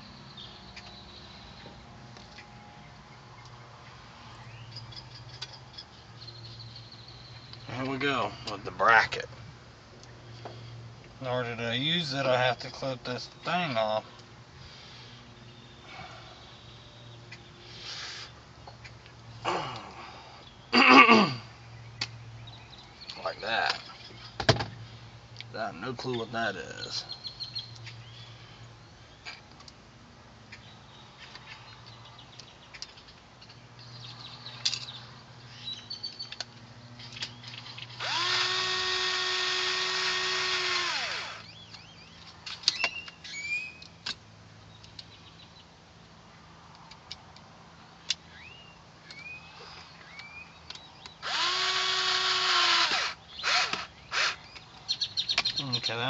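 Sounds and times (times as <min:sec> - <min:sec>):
power drill driving screws: 0:37.9 - 0:41.5, 0:51.2 - 0:54.4.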